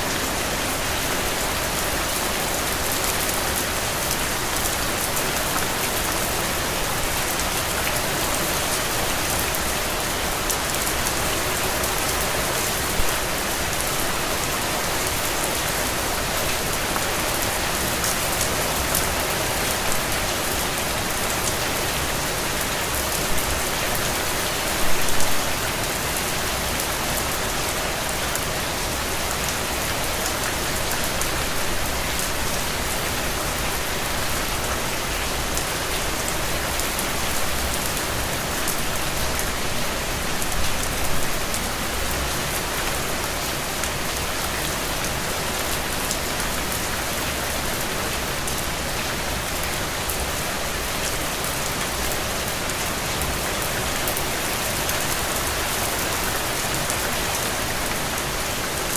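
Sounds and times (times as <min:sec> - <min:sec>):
steady rain falling: 0:00.0 - 0:58.9.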